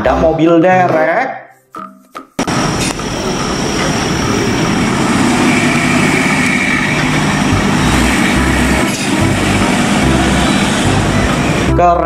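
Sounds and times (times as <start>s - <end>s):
truck engine rumbling: 2.4s - 11.8s.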